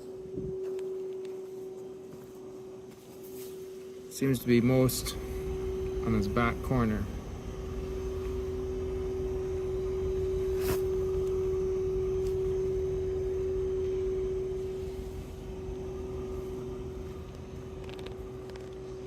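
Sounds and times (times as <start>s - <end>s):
heat pump whine: 0.0s - 19.0s
fan rumble: 2.8s - 19.0s.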